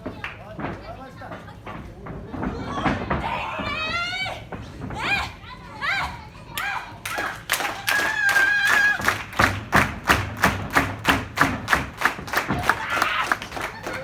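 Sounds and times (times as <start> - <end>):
sharp slaps: 8.8 - 14.0.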